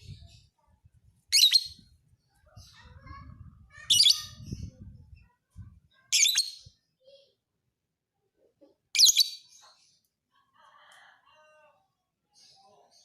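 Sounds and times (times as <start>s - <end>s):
bird soft chatter: 0.0s - 7.3s
bird shrill chirping: 1.3s - 1.8s, 6.2s - 6.7s, 9.0s - 9.5s.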